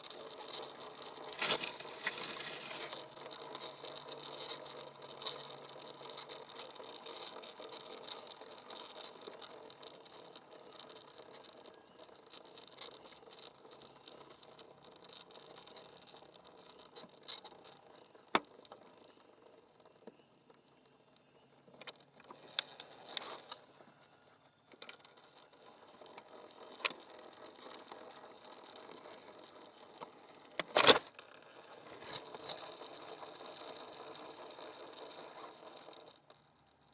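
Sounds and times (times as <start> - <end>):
small electric motor whirring: 0.0 - 19.6.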